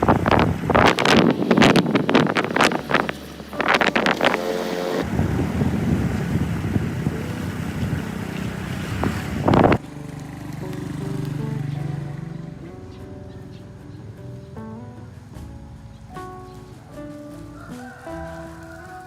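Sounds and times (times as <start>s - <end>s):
wind buffeting microphone: 0.0s - 9.8s
steady rumble: 0.0s - 16.7s
music with sustained notes: 0.0s - 19.0s.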